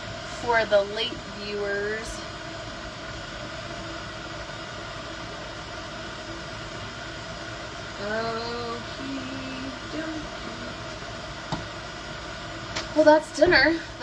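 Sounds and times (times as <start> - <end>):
kitchen hum and hiss: 0.0 - 14.0.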